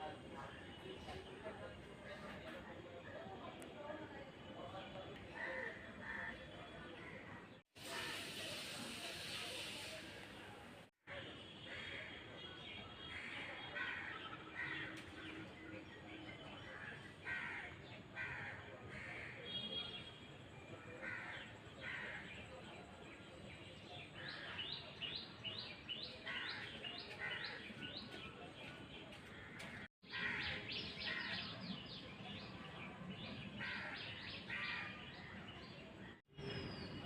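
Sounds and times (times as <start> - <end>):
birds chirping and cawing: 24.0 - 32.6, 33.2 - 36.8.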